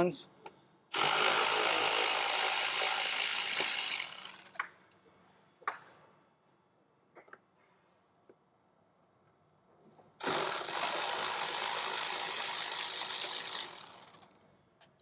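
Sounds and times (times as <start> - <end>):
cordless power driver spinning: 1.0 - 4.6, 10.2 - 14.3.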